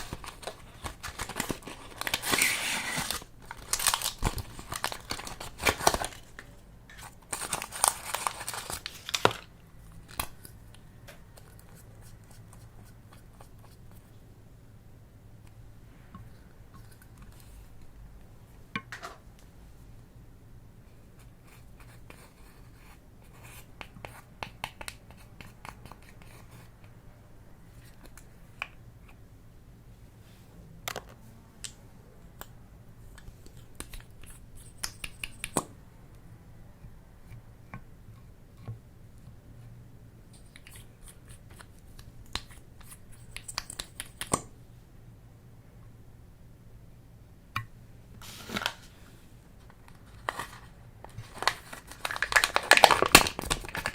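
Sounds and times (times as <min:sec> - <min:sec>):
hands clicking and scraping objects: 0:23.3 - 0:27.0, 0:33.1 - 0:35.7, 0:40.4 - 0:44.5.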